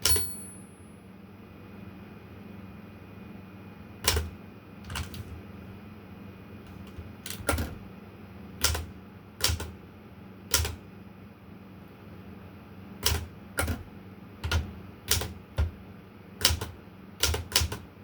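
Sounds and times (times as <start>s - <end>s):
manual typewriter key strikes: 0.0s - 0.7s, 4.0s - 5.3s, 6.7s - 7.8s, 8.6s - 9.8s, 10.5s - 10.8s, 13.0s - 15.8s, 16.4s - 17.9s.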